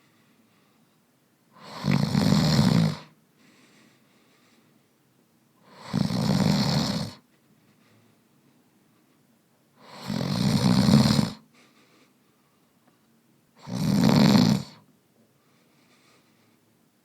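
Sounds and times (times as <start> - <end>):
man snoring: 1.6 - 3.2, 5.6 - 7.2, 9.8 - 11.4, 13.6 - 14.8.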